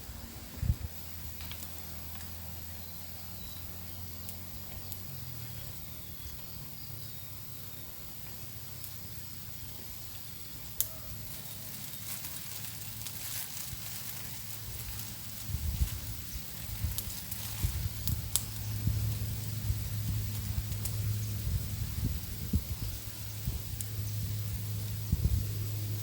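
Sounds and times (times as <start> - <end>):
low hum: 0.0 - 26.0
outdoor hiss: 0.0 - 26.0
light crackles and ticks: 1.3 - 2.4, 10.8 - 21.1.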